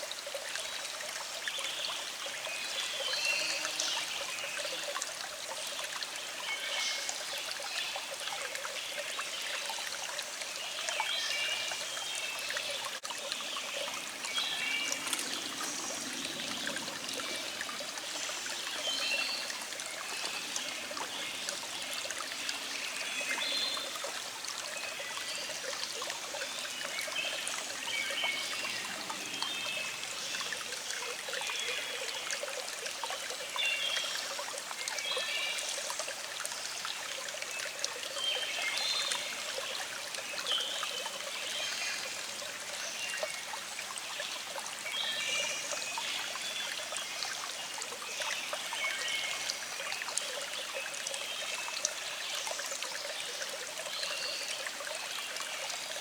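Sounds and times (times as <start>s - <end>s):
stream trickling: 0.0s - 56.0s
birds chirping: 13.3s - 21.7s.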